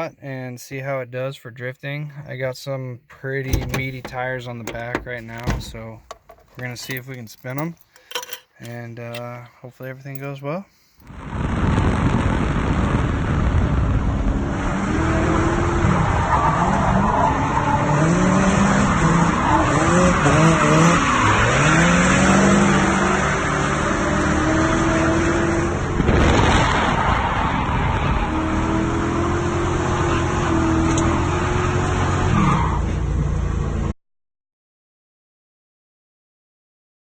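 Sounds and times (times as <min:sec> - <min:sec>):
car engine revving: 0:03.5 - 0:06.5
tires skidding and squealing: 0:14.5 - 0:25.4, 0:26.1 - 0:33.2.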